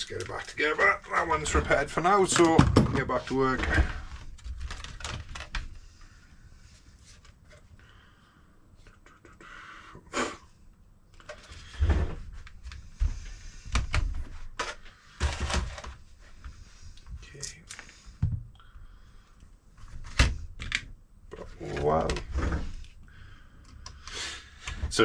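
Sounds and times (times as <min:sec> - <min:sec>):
plastic parts clicking and knocking: 0:01.4 - 0:05.8, 0:13.7 - 0:16.0.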